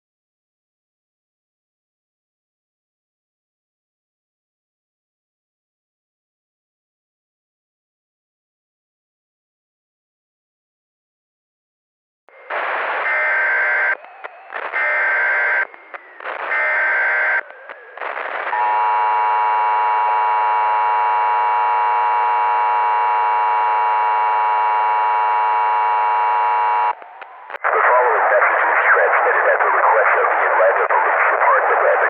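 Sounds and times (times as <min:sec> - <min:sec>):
data noise bursts: 0:12.3 - 0:32.0.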